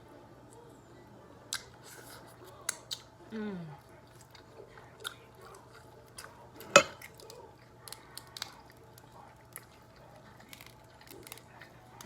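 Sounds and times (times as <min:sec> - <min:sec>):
chewing and small clicks: 0:01.5 - 0:03.1, 0:03.8 - 0:12.0
crab shell cracking: 0:06.9 - 0:09.6, 0:10.4 - 0:11.6.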